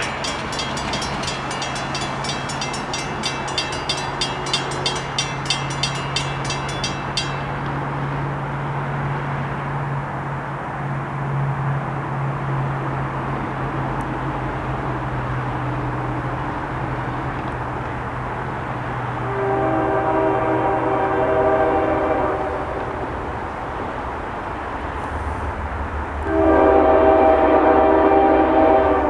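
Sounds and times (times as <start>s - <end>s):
bell ringing rapidly: 0.0s - 7.6s
diesel locomotive drone: 0.0s - 29.0s.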